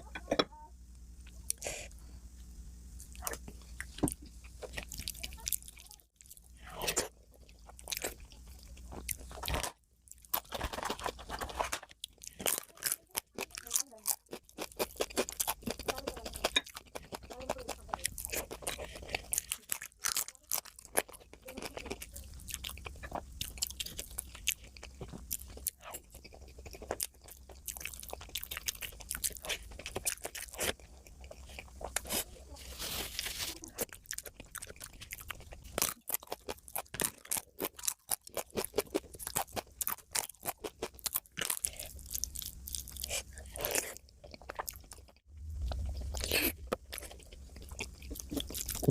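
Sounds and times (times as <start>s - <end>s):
person chewing and crunching: 3.0s - 48.9s.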